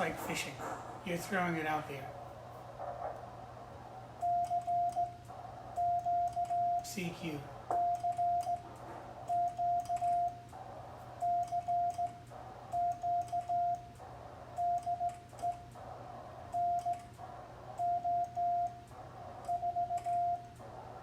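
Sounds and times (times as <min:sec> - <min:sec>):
low hum: 0:00.0 - 0:21.0
morse code tone: 0:04.2 - 0:05.2, 0:05.8 - 0:07.0, 0:07.7 - 0:10.4, 0:11.2 - 0:13.9, 0:14.6 - 0:15.7, 0:16.5 - 0:17.1, 0:17.8 - 0:18.8, 0:19.4 - 0:20.5
keying clicks: 0:04.2 - 0:06.8, 0:07.8 - 0:10.5, 0:11.2 - 0:14.0, 0:16.5 - 0:17.2, 0:19.4 - 0:20.6.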